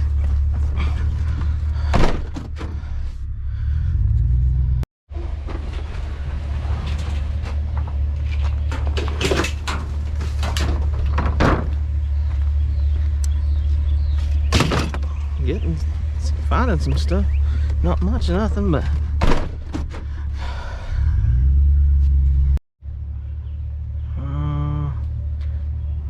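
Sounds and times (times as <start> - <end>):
vehicle engine droning: 0.0 - 26.0
sharp knocks and rattles: 5.2 - 13.0, 14.1 - 16.0.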